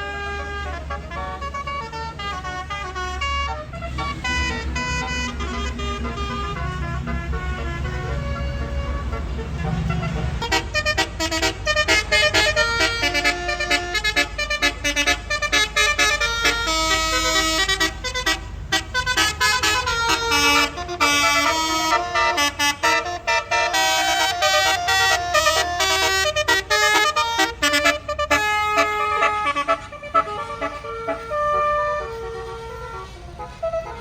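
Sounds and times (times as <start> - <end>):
bus engine rumbling: 0.0 - 34.0
bus horn playing melody: 0.0 - 34.0.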